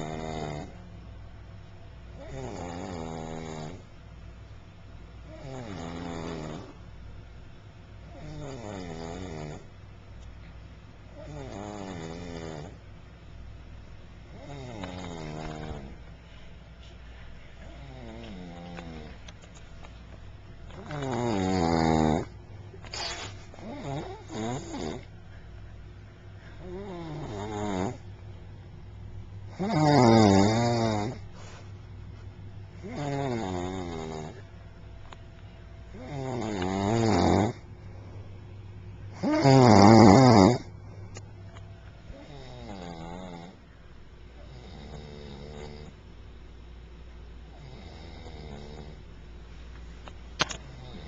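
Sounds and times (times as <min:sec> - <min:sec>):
person snoring: 0:00.0 - 0:00.8, 0:02.2 - 0:03.9, 0:05.3 - 0:06.8, 0:08.1 - 0:09.7, 0:11.2 - 0:12.8, 0:14.3 - 0:16.0, 0:17.6 - 0:19.2, 0:20.8 - 0:22.3, 0:23.0 - 0:25.1, 0:26.6 - 0:28.0, 0:29.5 - 0:31.3, 0:32.8 - 0:34.4, 0:35.9 - 0:37.6, 0:39.1 - 0:40.7, 0:42.1 - 0:43.6, 0:44.4 - 0:46.0, 0:47.5 - 0:49.0, 0:50.6 - 0:51.0.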